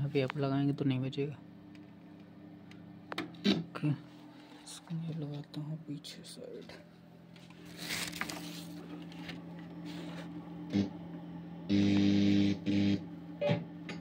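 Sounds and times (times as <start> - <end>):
low speaker hum: 0.0 - 14.0
cable handling crackle: 7.3 - 10.3
loud buzz bursts: 10.6 - 11.0, 11.7 - 13.1.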